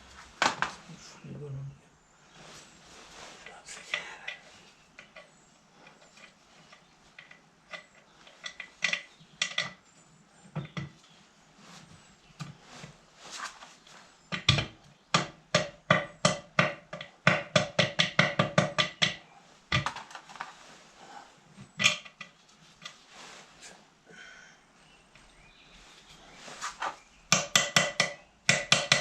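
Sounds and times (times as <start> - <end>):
hammer tapping on metal: 27.3 - 29.0.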